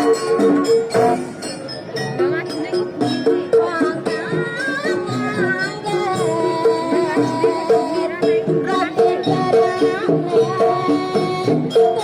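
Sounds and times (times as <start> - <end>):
traditional dance music: 0.0 - 12.0.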